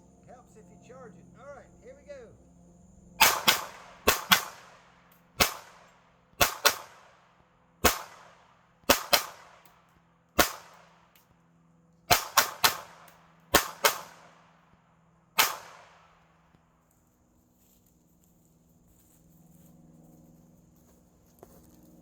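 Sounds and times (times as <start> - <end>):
rifle shots with echo: 3.2 - 9.7, 10.4 - 11.1, 12.1 - 14.5, 15.4 - 16.2.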